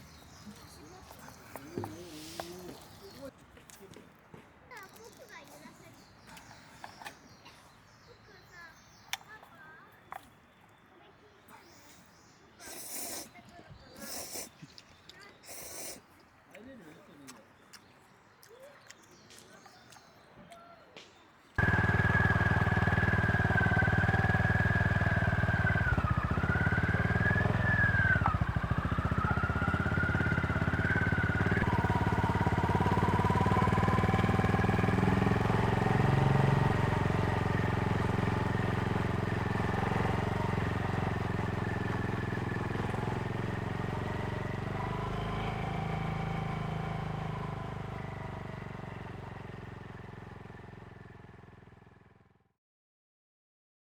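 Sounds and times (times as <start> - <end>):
motorcycle engine running: 21.6 - 52.5.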